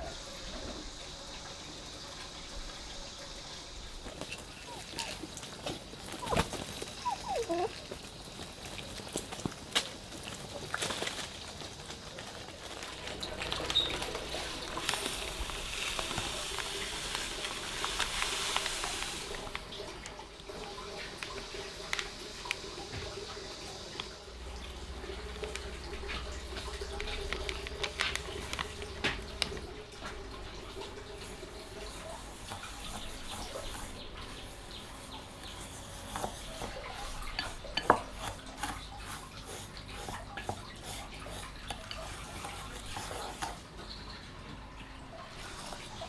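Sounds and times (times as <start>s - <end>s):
dishes and utensils clinking: 35.0s - 44.2s.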